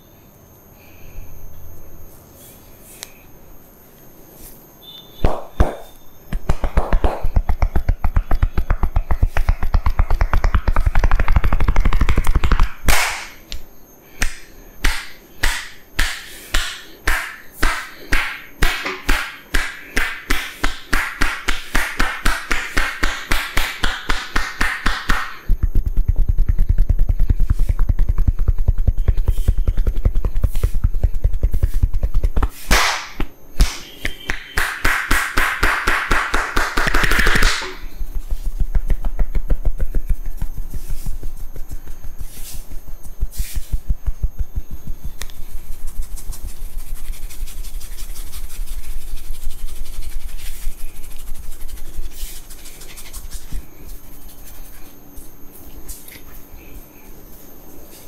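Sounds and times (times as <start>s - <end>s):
hands slapping on a head: 5.2s - 13.4s, 14.2s - 25.4s, 30.2s - 37.8s, 38.4s - 44.5s.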